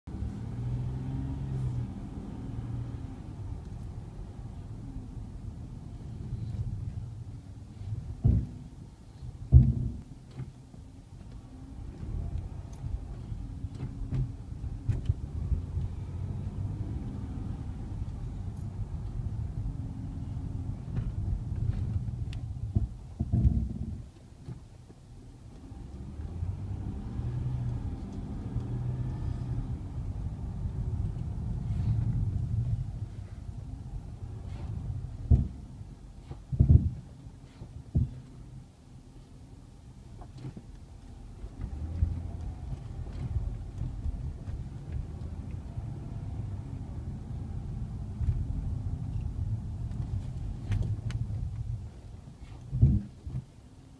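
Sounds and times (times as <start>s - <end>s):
brakes groaning: 0.1s - 24.7s, 25.6s - 38.6s, 40.0s - 53.7s
thump: 8.1s - 8.7s, 9.5s - 10.5s, 22.7s - 24.6s, 34.6s - 35.6s, 36.2s - 37.0s, 37.9s - 38.3s, 52.7s - 53.4s.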